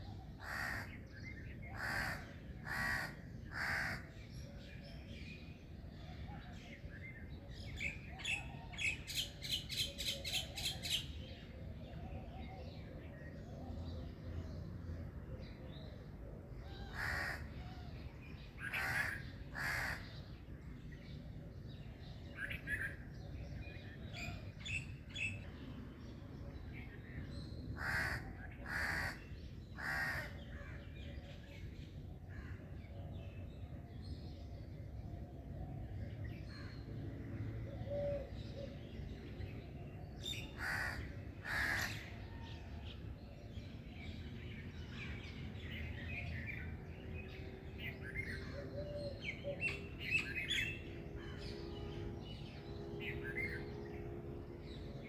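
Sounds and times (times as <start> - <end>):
harsh bird calls: 0.0 - 4.2, 16.8 - 17.9, 18.5 - 20.4, 27.8 - 30.7.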